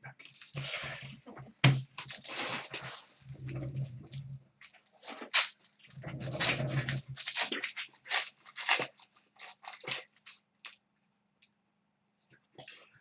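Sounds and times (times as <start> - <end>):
foil pack wrapper tearing: 1.9 - 3.1, 5.2 - 10.8.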